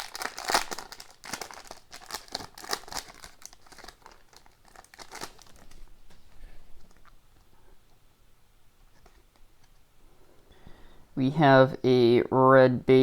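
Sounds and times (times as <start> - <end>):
wrapper being torn and crinkled: 0.0 - 6.2.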